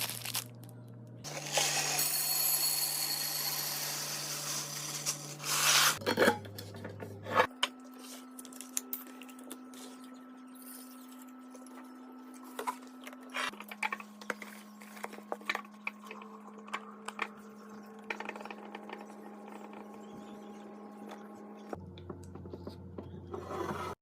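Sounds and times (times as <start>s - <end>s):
steady low hum: 0.0s - 1.4s.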